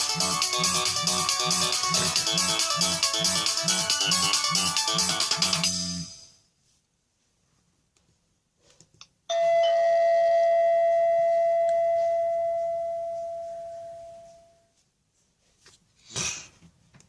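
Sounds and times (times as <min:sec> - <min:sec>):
bell-like phone chime: 0:09.3 - 0:14.6.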